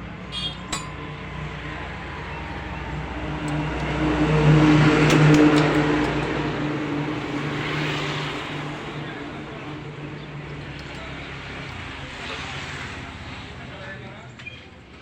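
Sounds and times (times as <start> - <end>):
engine humming: 0.0 - 15.0
sharp metallic clinks: 0.5 - 1.6.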